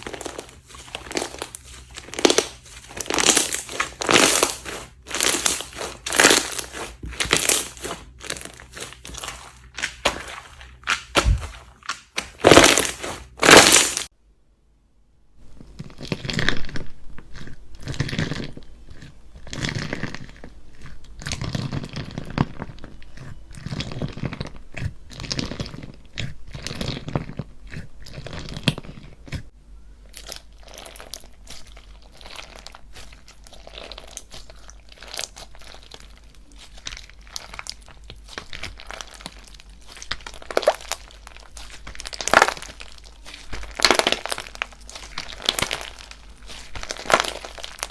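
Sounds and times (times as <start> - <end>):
slime crunching and crinkling: 0.0 - 14.1, 15.4 - 47.9.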